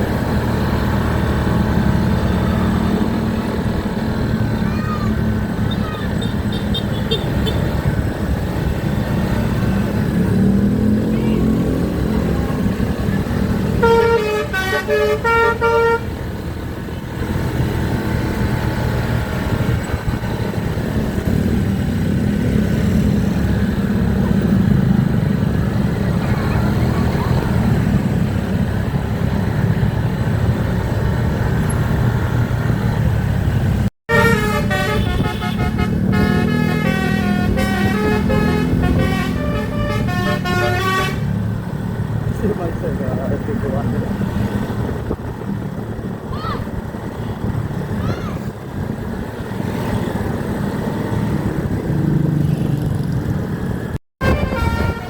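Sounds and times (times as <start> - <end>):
bus engine running: 0.0 - 55.0
road noise: 0.0 - 55.0
bus horn playing a tune: 13.7 - 16.2, 34.1 - 41.4, 54.2 - 55.0.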